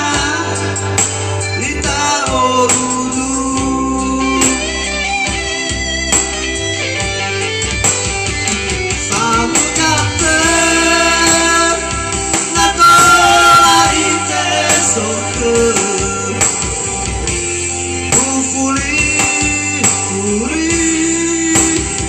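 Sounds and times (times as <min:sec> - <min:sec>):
person singing: 0:00.0 - 0:05.4, 0:09.0 - 0:17.2, 0:18.0 - 0:22.0
guitar accompaniment: 0:00.0 - 0:22.0.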